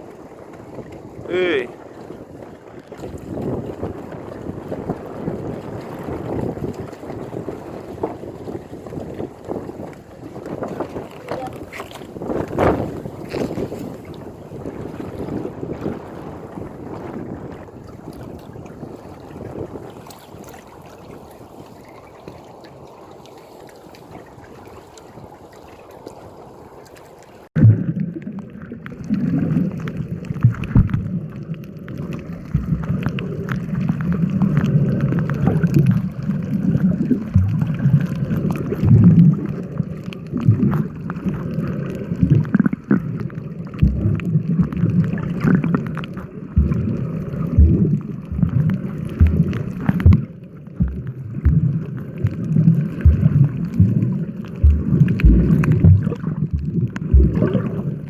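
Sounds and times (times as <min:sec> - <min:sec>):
wind rumbling on microphone: 0:00.0 - 0:26.8, 0:27.5 - 0:58.0
sea water sloshing and gurgling: 0:00.0 - 0:58.0
low thumps: 0:30.4 - 0:31.2, 0:32.4 - 0:33.2, 0:37.3 - 0:38.0, 0:43.8 - 0:45.0, 0:46.6 - 0:58.0.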